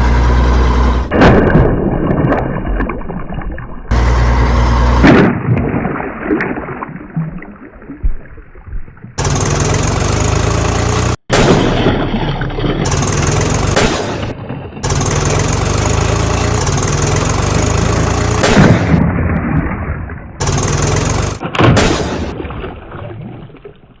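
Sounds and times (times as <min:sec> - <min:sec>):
heavy engine rumbling: 0:00.0 - 0:01.4, 0:03.9 - 0:05.2, 0:09.2 - 0:19.1, 0:20.4 - 0:22.4
loud crashes or splashes: 0:01.1 - 0:03.2, 0:03.9 - 0:06.9, 0:11.3 - 0:15.2.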